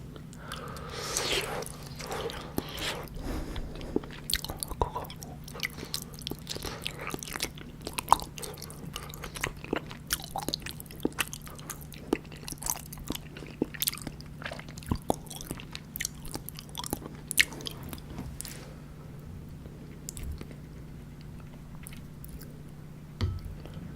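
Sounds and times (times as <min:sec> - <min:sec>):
wet chewing with sticky smacks: 0:03.6 - 0:18.6, 0:19.6 - 0:22.5.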